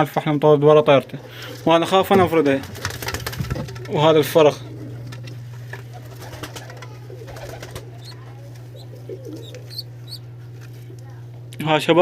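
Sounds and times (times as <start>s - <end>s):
steady low hum: 0.0s - 12.0s
pigeons cooing: 1.1s - 10.5s
faint high chirps: 8.8s - 10.2s.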